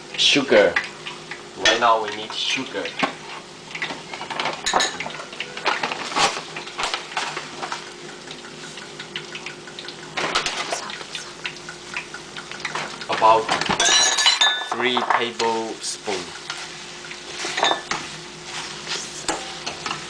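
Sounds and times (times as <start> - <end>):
metal utensils clinking on pot: 4.2 - 6.0, 13.5 - 15.4, 17.4 - 18.0.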